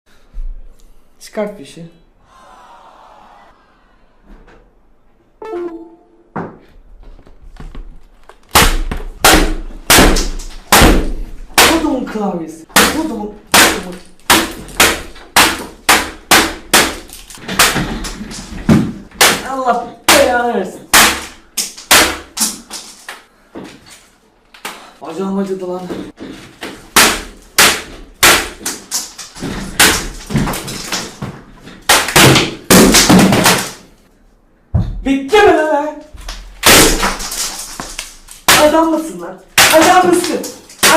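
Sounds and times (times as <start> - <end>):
keyboard smashed against surface: 36.6 - 38.7.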